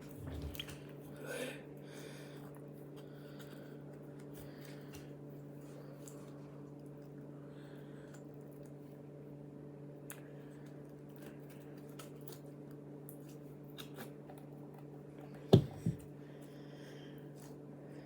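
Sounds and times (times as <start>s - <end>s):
steady low hum: 14.6s - 17.2s
slime being squished by hand: 15.6s - 16.0s.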